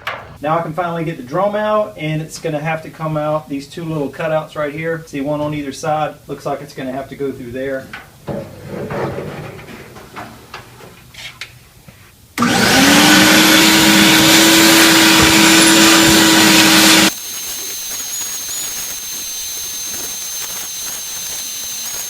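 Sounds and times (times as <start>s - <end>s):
handling clicks: 0.0s - 0.4s
vacuum cleaner motor running: 12.4s - 22.0s
steady hiss with high whine: 15.1s - 22.0s.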